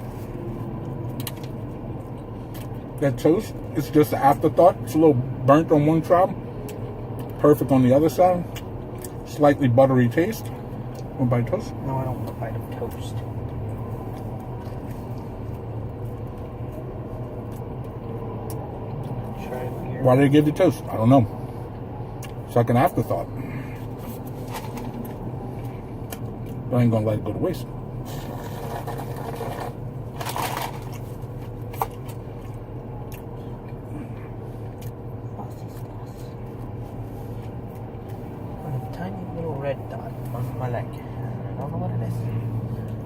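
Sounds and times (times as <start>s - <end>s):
low background hum: 0.0s - 43.0s
person chewing toast: 28.2s - 38.3s.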